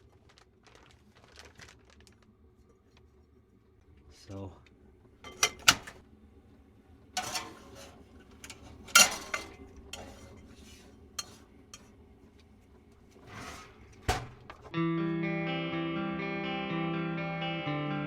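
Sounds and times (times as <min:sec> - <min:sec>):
dishes and cutlery clattering: 0:05.3 - 0:06.0, 0:07.2 - 0:11.9.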